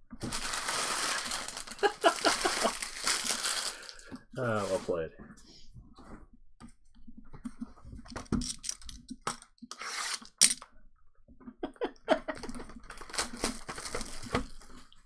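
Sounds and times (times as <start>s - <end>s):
wrapper crinkling: 0.1s - 4.8s, 12.4s - 15.0s
cards clicking and rustling: 0.2s - 4.1s, 8.1s - 10.6s, 12.4s - 14.7s.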